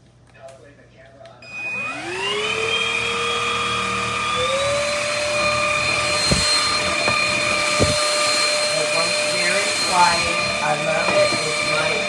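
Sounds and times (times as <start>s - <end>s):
stick vacuum motor whining: 1.4s - 12.0s
low thumps: 4.3s - 11.6s.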